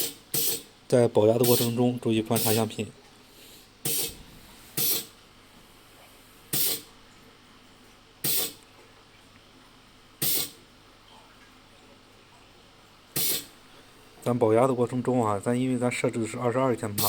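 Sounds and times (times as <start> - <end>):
air hissing in short bursts: 0.0 - 0.7, 1.4 - 2.7, 3.3 - 5.2, 6.5 - 6.9, 8.2 - 8.6, 10.2 - 10.6, 13.2 - 13.6.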